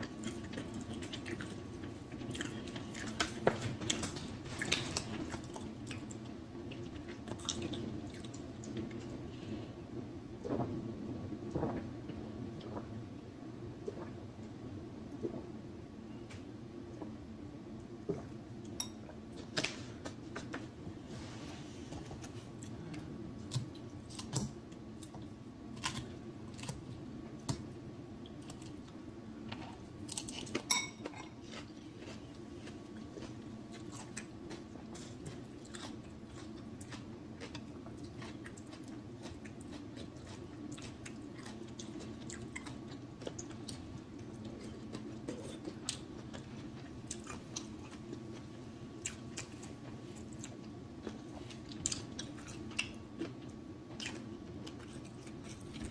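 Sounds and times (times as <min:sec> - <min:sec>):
person chewing food: 0:00.0 - 0:09.7, 0:21.8 - 0:27.6, 0:28.2 - 0:55.9
low background hum: 0:00.0 - 0:55.9.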